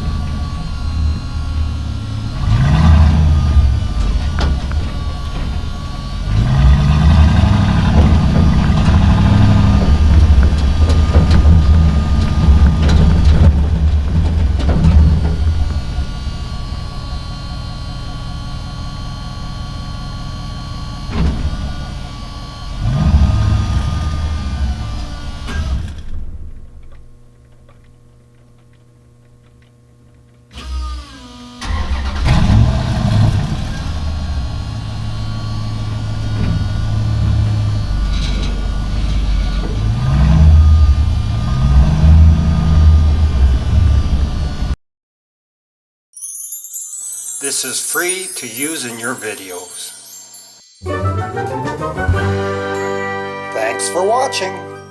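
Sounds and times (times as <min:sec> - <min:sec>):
truck diesel engine running: 0:00.0 - 0:26.8, 0:31.6 - 0:44.8.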